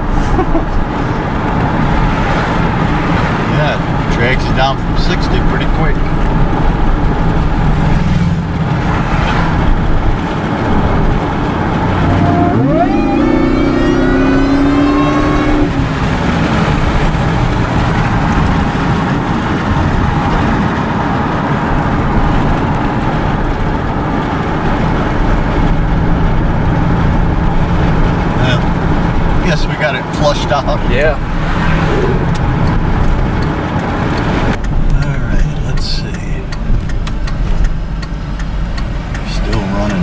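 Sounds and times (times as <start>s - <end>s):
pickup truck engine driving: 0.0s - 40.0s
rising whine: 11.4s - 16.4s.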